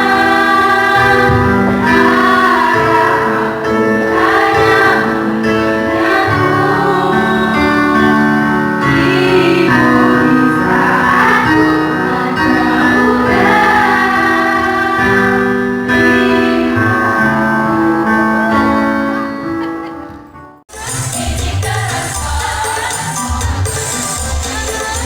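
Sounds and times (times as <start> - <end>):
person singing: 0.0 - 20.0
guitar accompaniment: 0.0 - 20.6.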